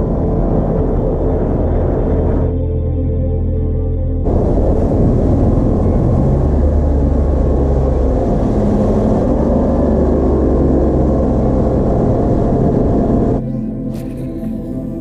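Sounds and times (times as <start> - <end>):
boat motor running at speed: 0.0 - 2.7, 4.2 - 15.0.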